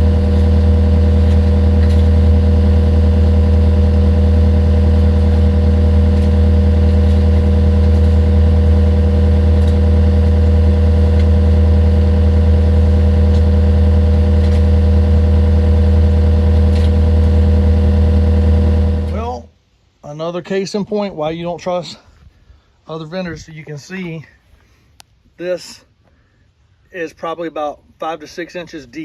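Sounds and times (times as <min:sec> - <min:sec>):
engine droning steadily: 0:00.0 - 0:19.5.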